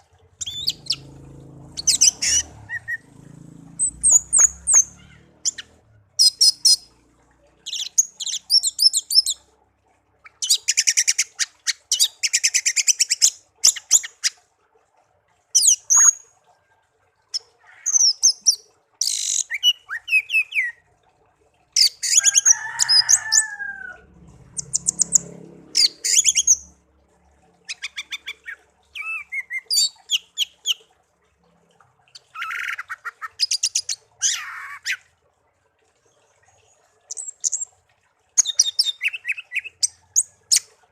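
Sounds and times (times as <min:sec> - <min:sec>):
songbird singing trills: 0:00.4 - 0:06.9.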